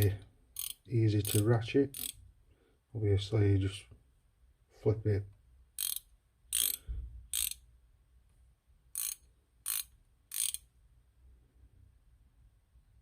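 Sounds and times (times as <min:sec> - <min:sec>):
ratchet spanner clicking: 0:00.6 - 0:02.2, 0:05.8 - 0:07.6, 0:09.0 - 0:10.7.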